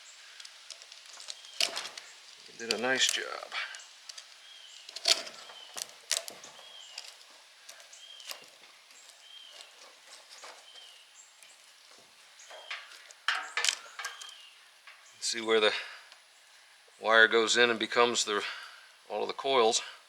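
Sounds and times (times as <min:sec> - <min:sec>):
copper wire snapping: 0:00.2 - 0:15.0.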